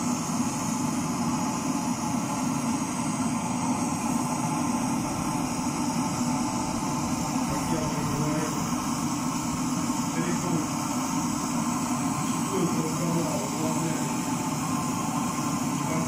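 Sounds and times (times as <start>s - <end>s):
furnace burner roaring: 0.0s - 16.0s.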